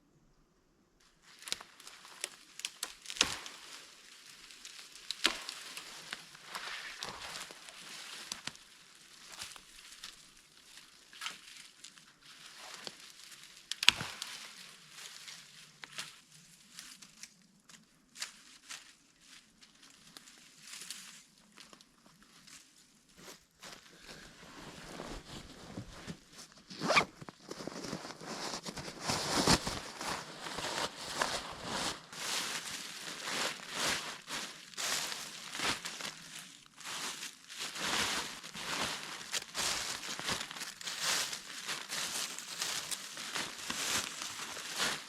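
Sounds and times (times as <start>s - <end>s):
dry wood crackling and snapping: 1.2s - 18.8s, 32.2s - 45.0s
zipper being pulled: 26.7s - 27.2s.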